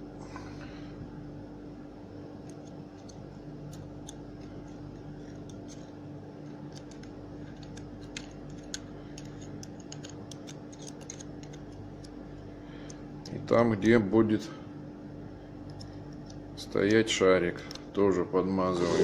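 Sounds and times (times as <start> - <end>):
low electrical hum: 0.0 - 19.0
light clicks and scrapes of parts: 2.5 - 12.2.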